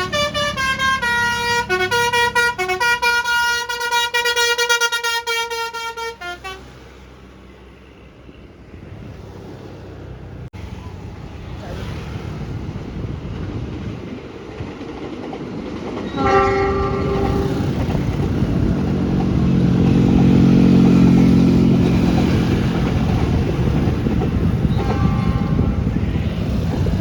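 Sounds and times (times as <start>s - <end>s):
bus horn: 0.0s - 6.9s, 16.1s - 18.3s, 24.3s - 26.3s
bus engine passing: 0.0s - 27.0s.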